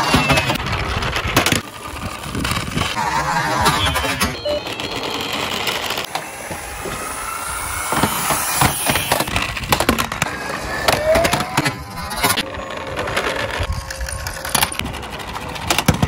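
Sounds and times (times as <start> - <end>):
toy cars rattling down a slope: 0.0 - 16.0
short rising tone: 2.9 - 12.9.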